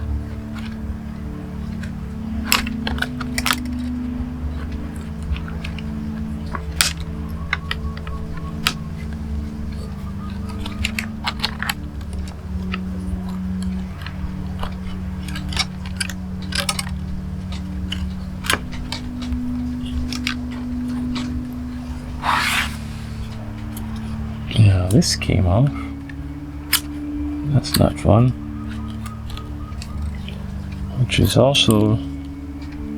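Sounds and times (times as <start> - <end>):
steady low hum: 0.0 - 32.9
rustle: 0.4 - 24.8.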